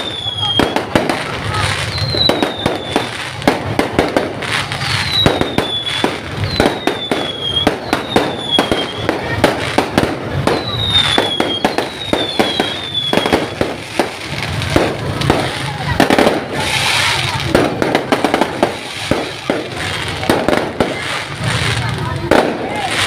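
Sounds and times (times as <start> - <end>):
fireworks bangs and pops: 0.0 - 23.0
falling whistles: 1.8 - 3.2, 4.9 - 9.1, 10.5 - 13.6.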